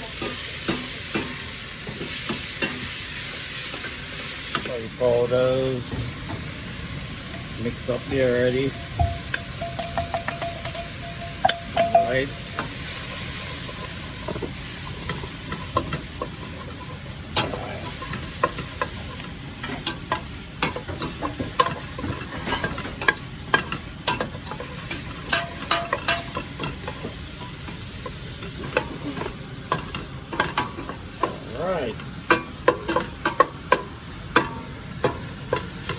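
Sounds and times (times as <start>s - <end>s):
food sizzling in a pot: 0.0s - 35.9s
utensil scraping against pot: 7.3s - 35.9s.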